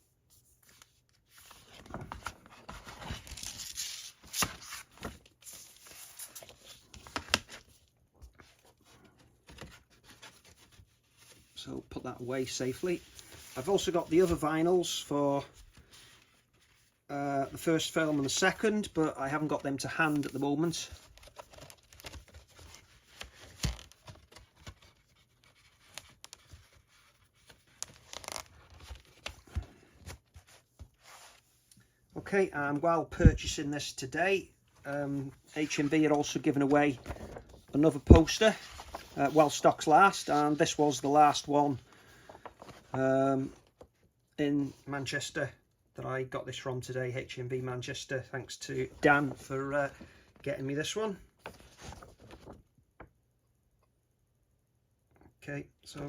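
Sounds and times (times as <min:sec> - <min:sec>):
paper and cardboard rustling: 0:00.3 - 0:11.6, 0:12.4 - 0:31.5, 0:34.8 - 0:43.0, 0:51.4 - 0:52.6.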